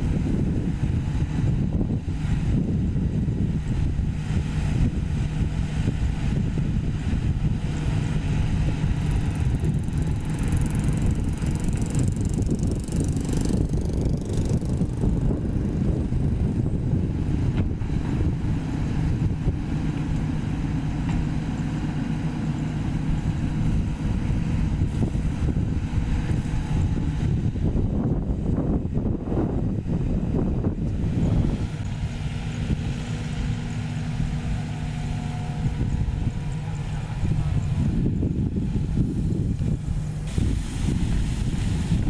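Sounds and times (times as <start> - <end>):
excavator diesel engine running: 0.0 - 42.0
faint hiss: 38.9 - 42.0.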